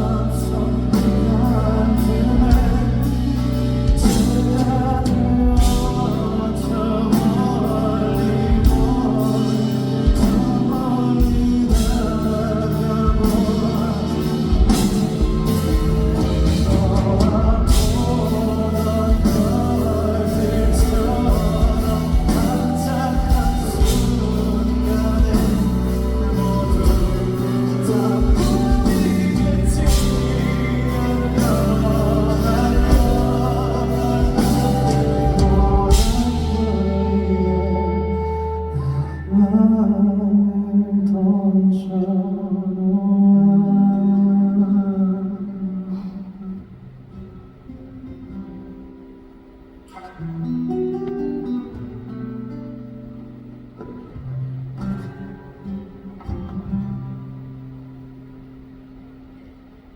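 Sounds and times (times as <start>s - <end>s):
drums steady beat: 0.0s - 38.1s
live band music: 0.0s - 40.1s
person singing: 0.0s - 46.7s.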